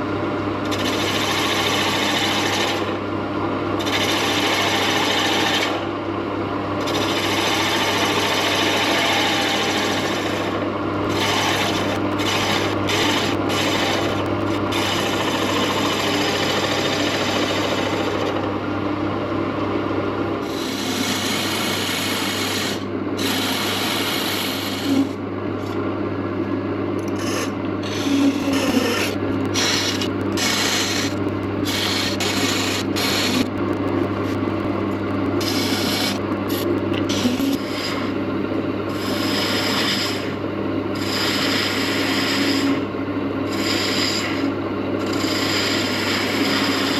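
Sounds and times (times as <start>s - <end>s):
wood lathe humming: 6.9s - 18.4s, 27.2s - 38.0s, 41.0s - 42.4s, 43.6s - 44.3s, 45.1s - 46.9s
tool rasping on spinning wood: 27.2s - 33.4s.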